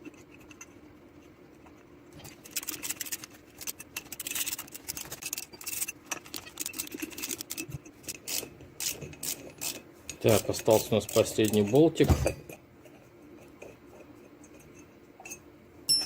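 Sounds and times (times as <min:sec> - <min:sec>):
spanner clicking and scraping on bolt: 0:02.4 - 0:12.2.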